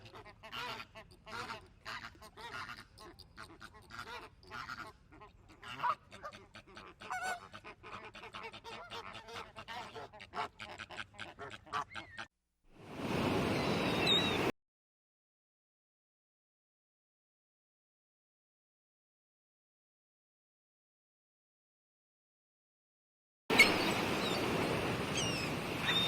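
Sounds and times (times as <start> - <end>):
waterfowl honking and quacking: 0.0 - 12.3, 23.5 - 26.0.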